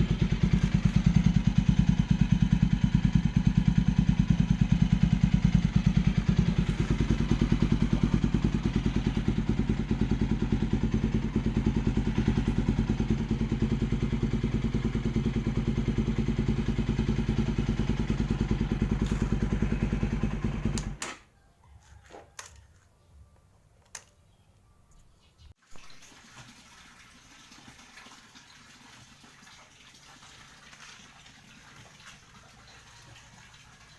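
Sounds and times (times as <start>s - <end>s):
motorcycle idling: 0.0s - 21.0s.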